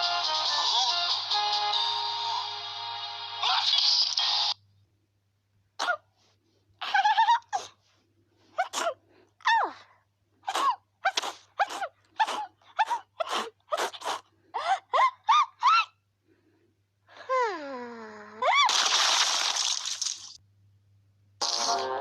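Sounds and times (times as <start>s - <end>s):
cartoon voice sneezing: 5.8s - 6.1s, 8.6s - 9.0s, 10.5s - 14.2s.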